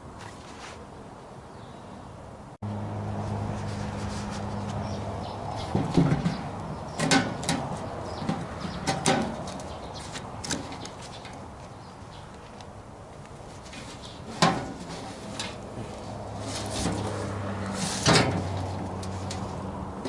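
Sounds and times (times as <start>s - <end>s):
objects knocking and clunking: 5.6s - 11.4s.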